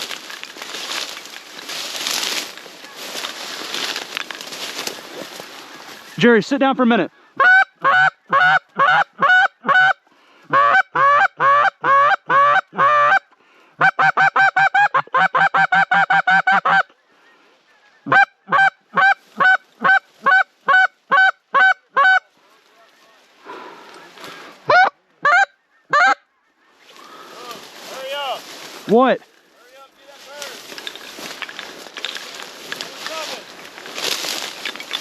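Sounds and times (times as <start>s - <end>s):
goose honking: 4.6s - 17.0s, 17.8s - 23.2s, 23.8s - 28.1s.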